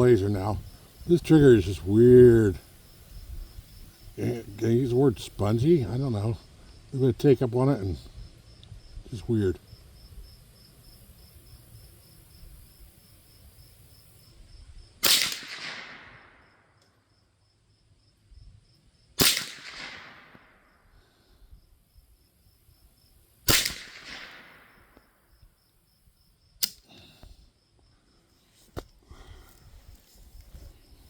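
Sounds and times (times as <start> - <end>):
rifle shots: 15.0 - 16.5, 19.2 - 20.7, 23.5 - 25.0.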